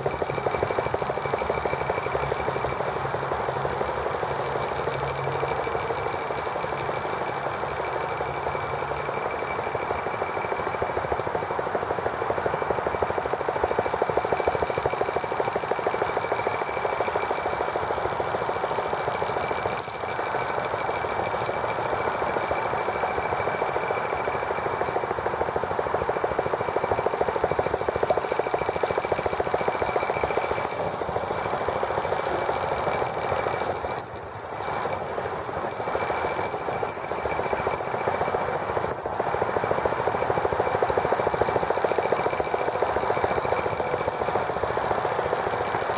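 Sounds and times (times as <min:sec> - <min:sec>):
small engine rattling: 0:00.0 - 0:45.9.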